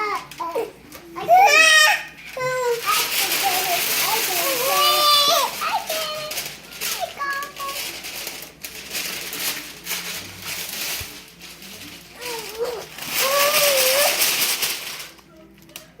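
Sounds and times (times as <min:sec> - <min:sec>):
paper crinkling and rustling: 0:00.0 - 0:16.0.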